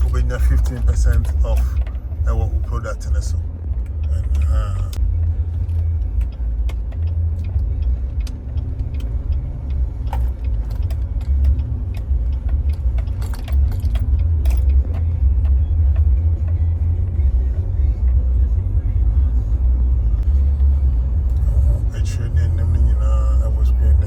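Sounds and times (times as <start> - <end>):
engine and road rumble: 0.0 - 24.0
small clicks and rattles: 5.6 - 16.8.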